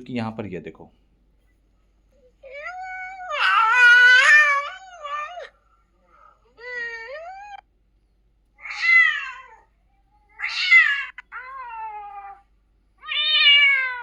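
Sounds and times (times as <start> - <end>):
cat meowing: 2.4 - 5.6, 6.6 - 7.6, 8.6 - 14.0.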